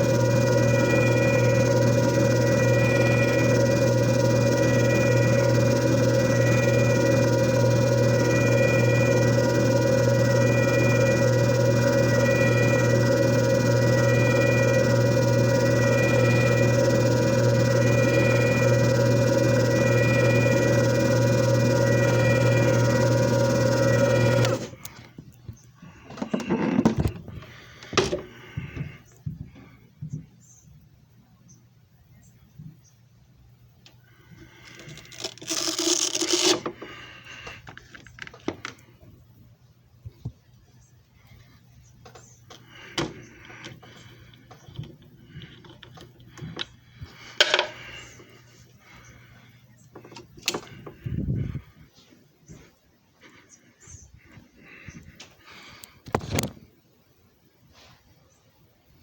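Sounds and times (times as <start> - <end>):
machine motor humming: 0.0 - 25.1.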